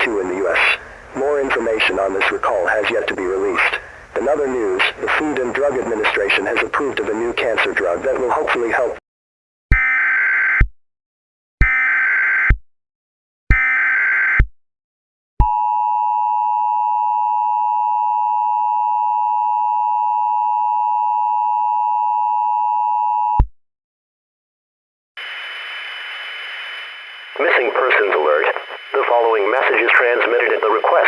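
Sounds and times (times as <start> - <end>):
data bursts: 25.2 - 31.0.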